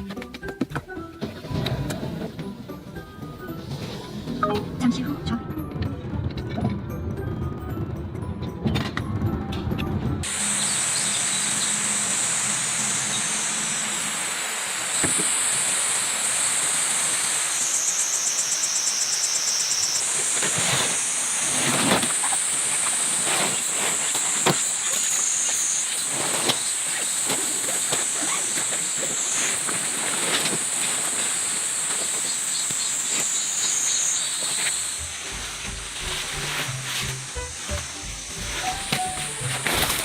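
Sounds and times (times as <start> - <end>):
night insects chorus: 10.2 - 40.0.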